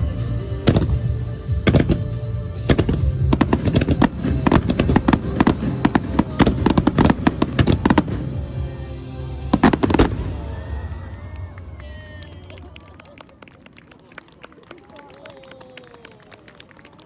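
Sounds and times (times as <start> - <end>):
fireworks bangs and crackles: 0.0 - 11.8.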